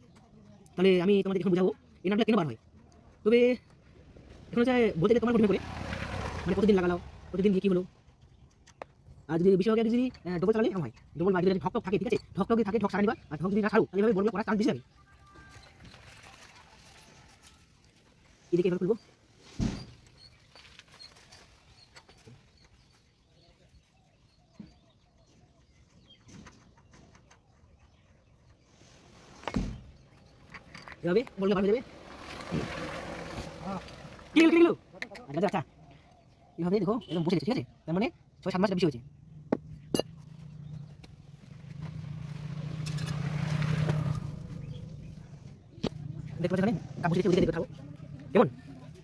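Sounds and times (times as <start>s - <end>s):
motor vehicle passing by: 3.9s - 7.8s, 29.1s - 35.0s, 38.5s - 49.0s.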